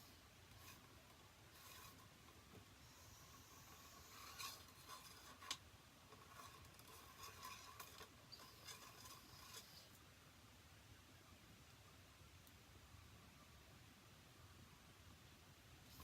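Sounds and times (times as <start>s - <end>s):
faint scraping: 0.0s - 10.0s
faint steady hum: 0.0s - 16.0s.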